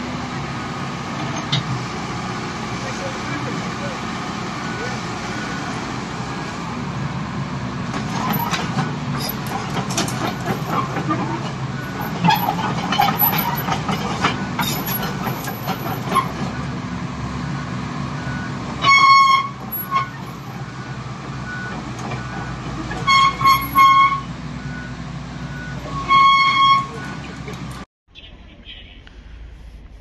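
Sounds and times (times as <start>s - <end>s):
vehicle noise rumble: 0.0s - 30.0s
vehicle horn: 18.8s - 20.2s, 23.1s - 24.3s, 25.9s - 27.2s.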